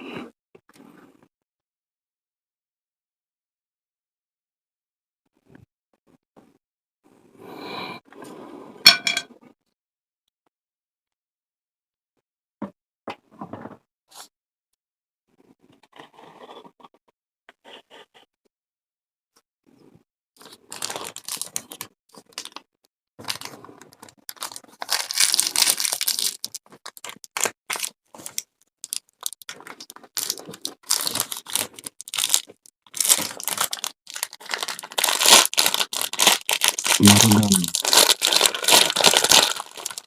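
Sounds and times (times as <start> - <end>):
packaging crinkling and tearing: 20.4 - 22.6, 23.2 - 40.0.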